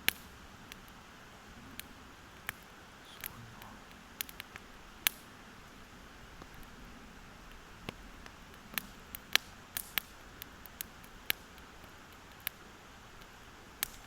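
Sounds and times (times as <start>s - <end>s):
campfire crackling: 0.0s - 14.0s
faint steady hiss: 0.0s - 14.0s.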